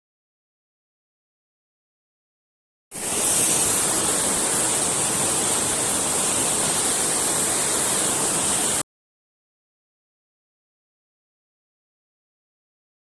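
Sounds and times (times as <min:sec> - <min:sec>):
flowing water rushing: 0:02.9 - 0:08.8.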